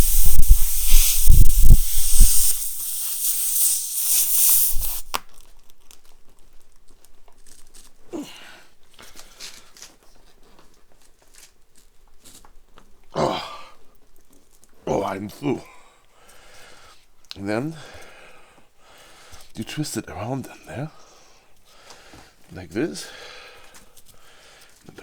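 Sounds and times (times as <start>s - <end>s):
low thumps: 0.0s - 2.9s
air hissing from tyre: 0.0s - 5.2s.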